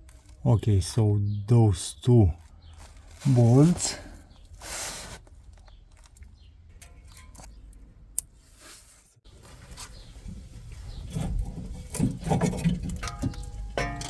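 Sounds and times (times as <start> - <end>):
scraping and rubbing with knocks: 2.6 - 6.2, 8.4 - 13.4.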